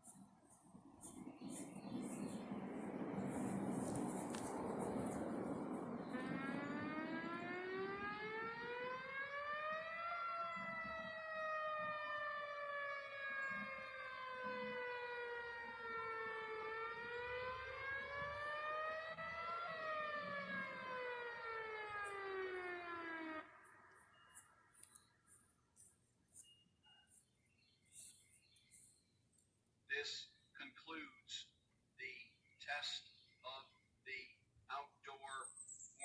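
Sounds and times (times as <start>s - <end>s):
warning siren wailing: 2.4s - 24.9s.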